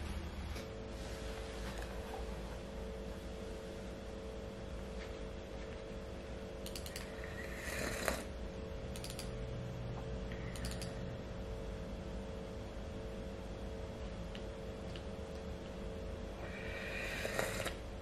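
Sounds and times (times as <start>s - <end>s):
steady low hum: 0.0s - 18.0s
sharp mechanical clicks: 6.6s - 7.2s, 8.9s - 9.4s, 10.5s - 11.0s.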